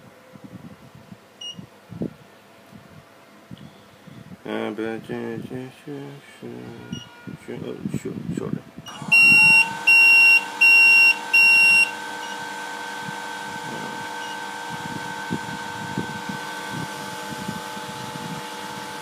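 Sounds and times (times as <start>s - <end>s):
fan whine: 0.0s - 19.0s
electronic buzzer beeps: 1.4s - 1.6s, 6.8s - 7.3s, 8.9s - 12.5s, 14.2s - 14.5s.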